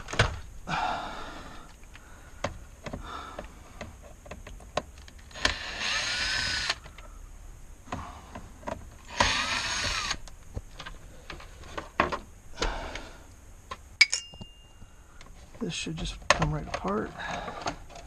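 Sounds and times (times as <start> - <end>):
power driver whining: 0.0 - 7.2, 7.8 - 14.4
clicks and knocks of handling parts: 1.6 - 5.6, 7.9 - 18.0.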